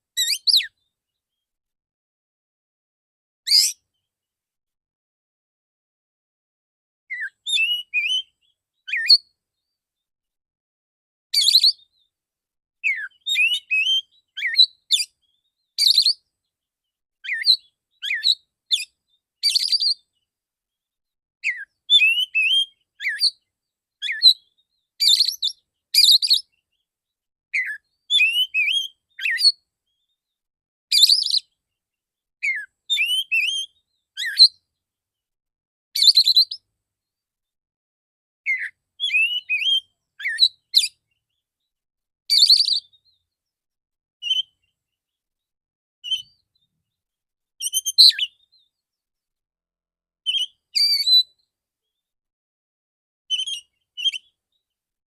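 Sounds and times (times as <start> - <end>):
bird singing whistles: 0.2 - 0.8, 3.5 - 3.8, 7.1 - 9.3, 11.4 - 12.0, 12.8 - 16.2, 17.2 - 20.1, 21.4 - 23.4, 24.0 - 26.6, 27.6 - 30.2, 30.9 - 31.5, 32.4 - 34.6, 36.0 - 36.6, 38.5 - 41.0, 42.3 - 43.2, 44.2 - 44.7, 46.0 - 46.6, 47.6 - 48.7, 50.3 - 51.4, 53.3 - 54.4.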